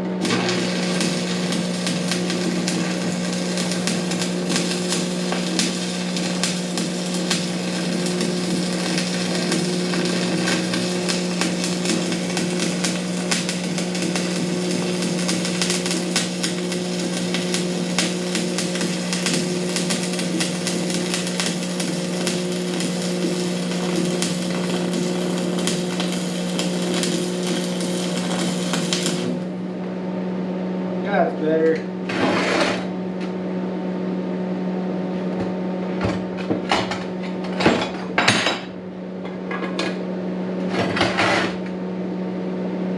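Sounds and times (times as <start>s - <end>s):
welding arc crackling: 0.0s - 29.8s
welding machine hum: 0.0s - 30.4s, 31.0s - 42.9s.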